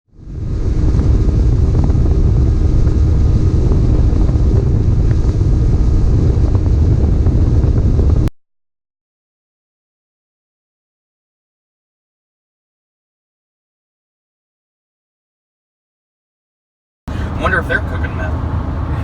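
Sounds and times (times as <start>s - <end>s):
vehicle rumble: 0.1s - 8.3s, 17.1s - 19.0s
wind on microphone: 0.1s - 8.3s.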